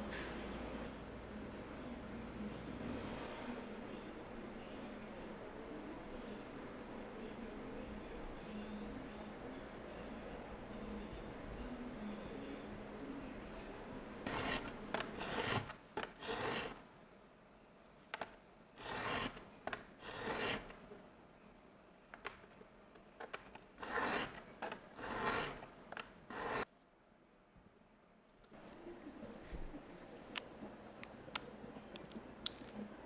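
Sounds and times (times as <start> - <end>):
rubbing or scraping strokes: 14.2 - 16.8, 23.8 - 26.6.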